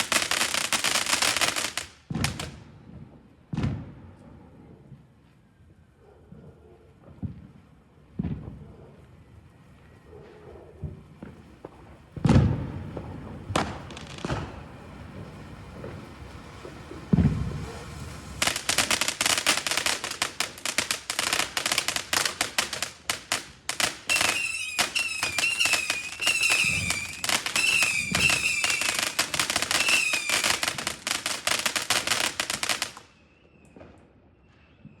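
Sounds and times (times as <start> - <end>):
wavering firework whistles: 0.0 - 2.5, 12.9 - 35.0
rapid firework crackle: 0.0 - 2.6, 10.9 - 33.1
deep firework boom: 26.1 - 29.6.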